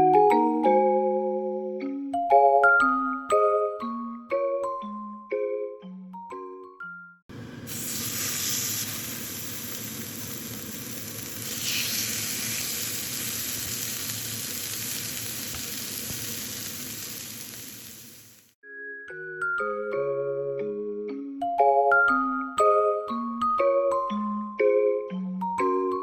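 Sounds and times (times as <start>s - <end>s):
food sizzling in a pan: 7.6s - 18.6s.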